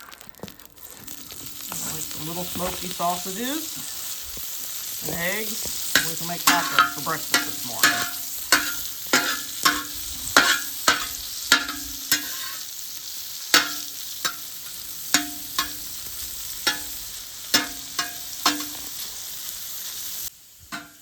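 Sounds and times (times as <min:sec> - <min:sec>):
food sizzling in a metal pan: 0:00.0 - 0:21.0
metal utensil knocking on pan: 0:06.0 - 0:12.5, 0:13.6 - 0:14.4, 0:15.2 - 0:15.8, 0:17.6 - 0:18.8, 0:20.7 - 0:21.0.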